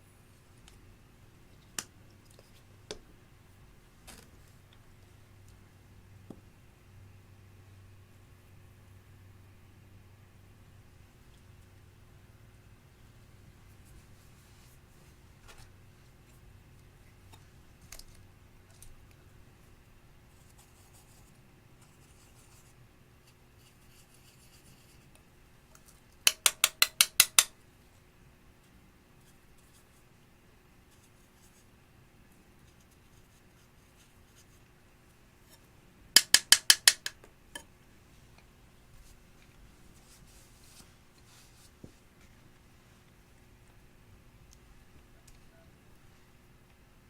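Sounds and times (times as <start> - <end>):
soft handling sounds: 37.6 - 43.8.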